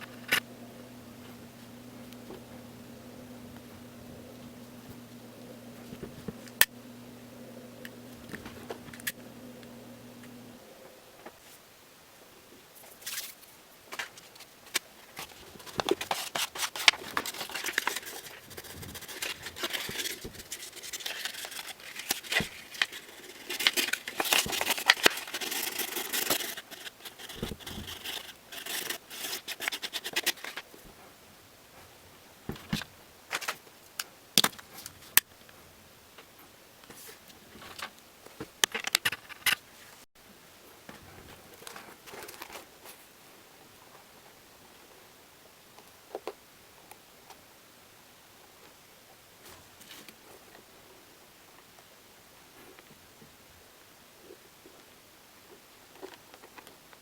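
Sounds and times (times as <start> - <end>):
scraping and rustling on a shoe: 12.8 - 31.2.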